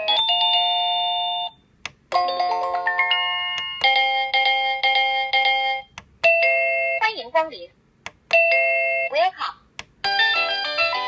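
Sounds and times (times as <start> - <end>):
doorbell electronic chime tunes: 0.0 - 1.6, 2.2 - 7.0, 8.3 - 9.1, 10.0 - 11.0.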